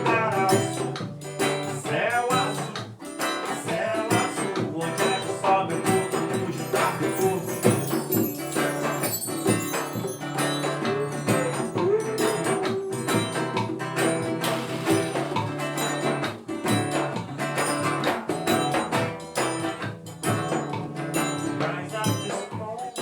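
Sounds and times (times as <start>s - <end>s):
reggae band instrumental: 0.0s - 23.0s.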